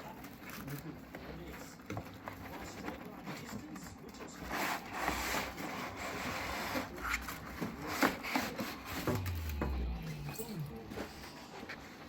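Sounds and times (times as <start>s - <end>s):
packaging rubbing and scraping: 0.0s - 9.6s
low hum: 8.9s - 11.6s.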